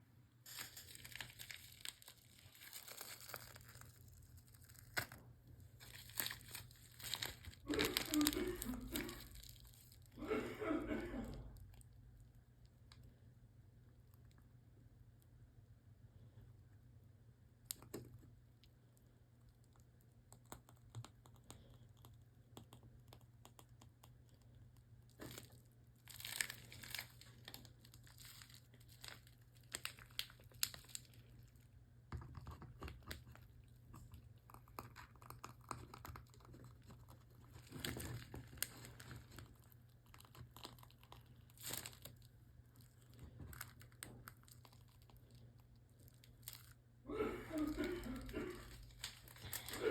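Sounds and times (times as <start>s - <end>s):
plastic piping bag crinkling: 0.4s - 10.4s, 24.2s - 31.8s, 32.5s - 49.9s.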